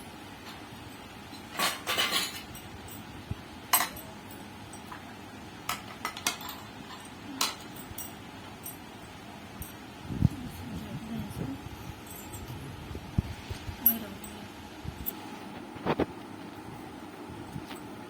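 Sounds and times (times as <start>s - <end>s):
kitchen utensils clinking: 1.3s - 3.0s, 3.7s - 8.9s.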